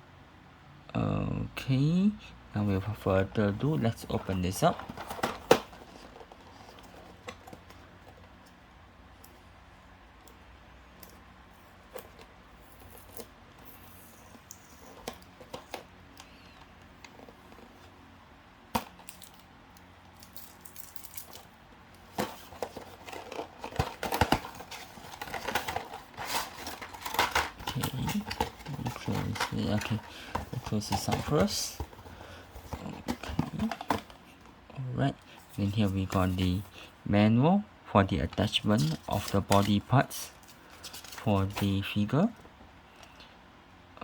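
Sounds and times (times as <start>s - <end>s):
cardboard and plastic packaging rustling: 2.6s - 8.7s, 11.0s - 36.9s, 38.2s - 43.2s.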